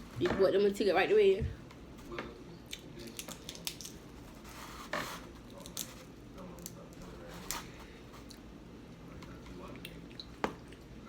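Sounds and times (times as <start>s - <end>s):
crab shell cracking: 2.7s - 4.1s.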